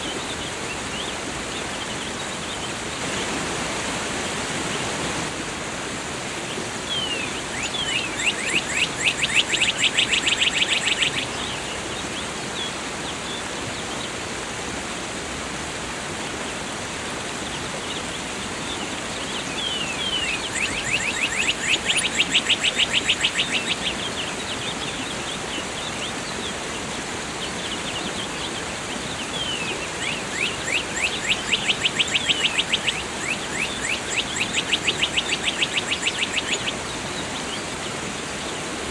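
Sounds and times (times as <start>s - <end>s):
waterfall rushing: 0.0s - 38.9s
songbird trilling: 6.9s - 11.6s, 19.4s - 26.6s, 27.6s - 37.3s.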